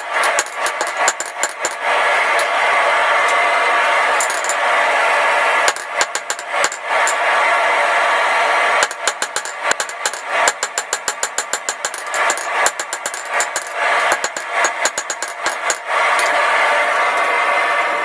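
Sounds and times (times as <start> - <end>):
hammer strikes on metal: 0.0 - 1.8, 4.2 - 4.6, 5.7 - 7.2, 8.8 - 16.3.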